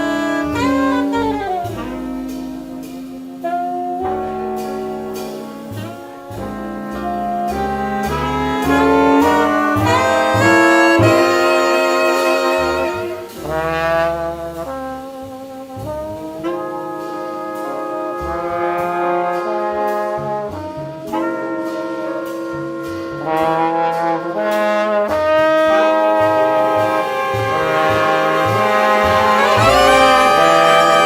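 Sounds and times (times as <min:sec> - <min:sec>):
walking bass line: 0:00.0 - 0:11.8, 0:26.5 - 0:31.0
horns playing held chords: 0:00.0 - 0:14.8, 0:15.7 - 0:31.0.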